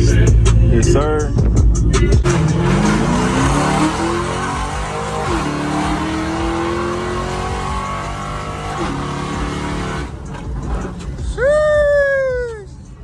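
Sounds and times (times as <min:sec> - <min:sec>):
car engine accelerating hard: 0:02.1 - 0:11.4.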